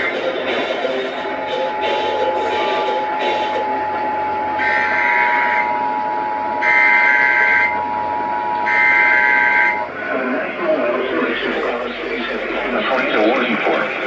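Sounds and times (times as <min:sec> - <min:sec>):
shrill digital data tones: 0:11.0 - 0:14.0.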